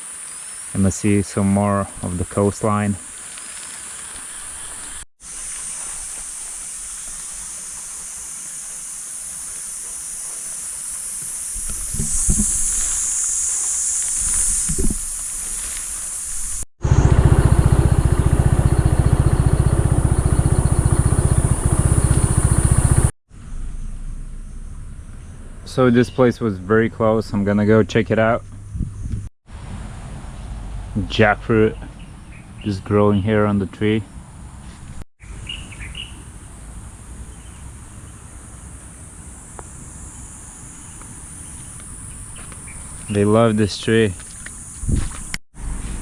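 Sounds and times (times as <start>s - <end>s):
insects buzzing: 0.0s - 1.8s, 2.4s - 25.9s, 35.2s - 46.0s
scooter engine idling: 16.8s - 23.1s
bird chirps: 35.2s - 36.3s.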